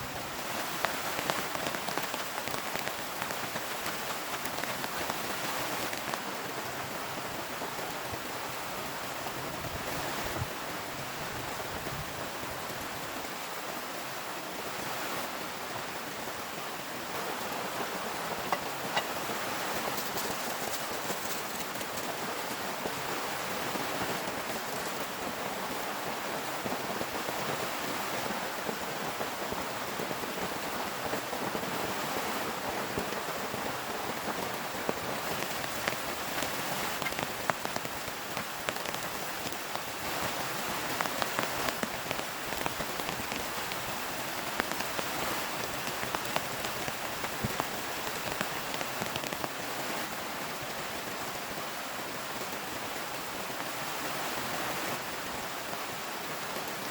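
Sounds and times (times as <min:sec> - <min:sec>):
heavy rain falling: 0:00.0 - 0:56.9.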